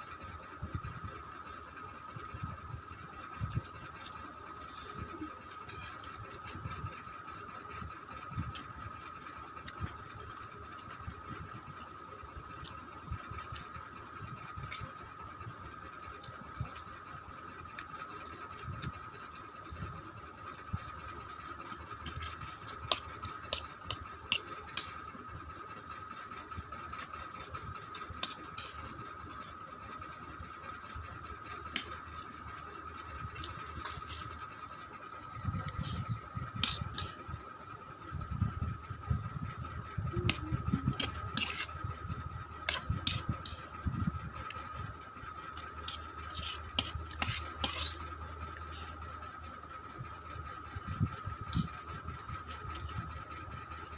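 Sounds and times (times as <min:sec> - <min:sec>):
steady high hum: 0:00.0 - 0:53.9.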